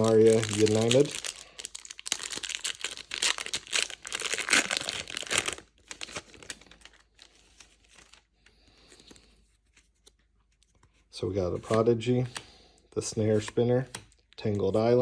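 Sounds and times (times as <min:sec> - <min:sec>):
cards rustling and clicking: 0:00.0 - 0:01.4, 0:02.1 - 0:15.0
foil wrapper tearing and crinkling: 0:00.0 - 0:08.3.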